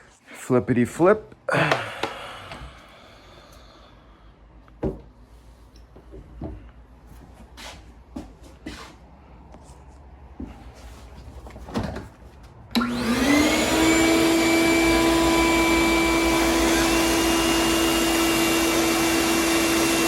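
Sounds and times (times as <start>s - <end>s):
shop vacuum running: 12.7s - 20.0s.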